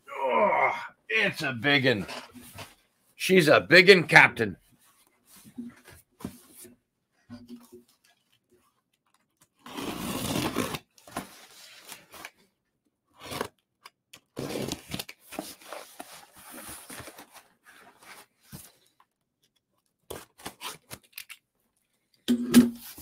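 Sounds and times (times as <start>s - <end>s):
cardboard box ripping: 9.6s - 11.9s
cardboard scraping and crinkling: 9.6s - 12.4s, 14.4s - 19.0s.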